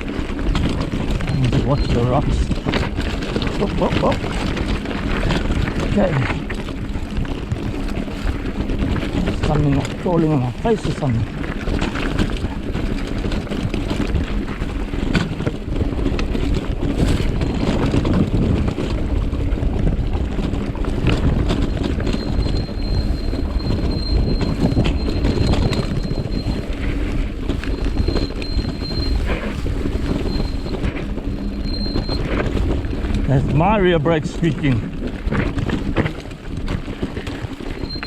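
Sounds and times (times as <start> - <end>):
bike rattling: 0.0 - 38.0
wind noise: 0.0 - 38.0
disc brake squealing: 1.0 - 6.5, 21.3 - 34.3, 37.6 - 38.0.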